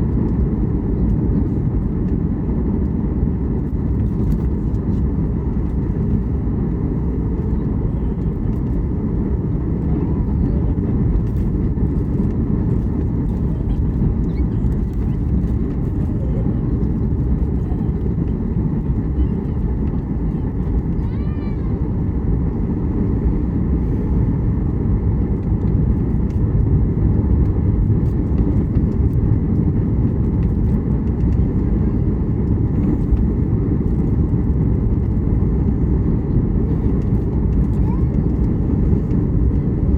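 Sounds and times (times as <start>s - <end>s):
aircraft cabin engine rumble: 0.0s - 39.9s.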